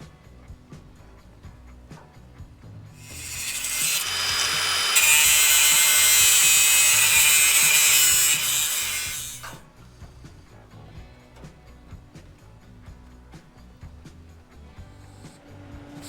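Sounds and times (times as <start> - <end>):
power grinder on sheet steel: 3.0 - 9.6.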